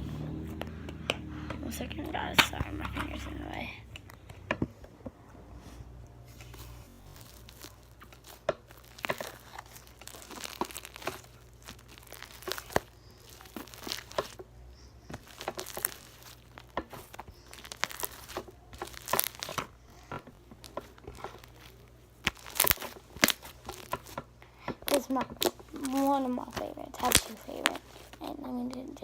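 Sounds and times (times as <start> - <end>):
hands squishing sticky slime: 6.3 - 28.8.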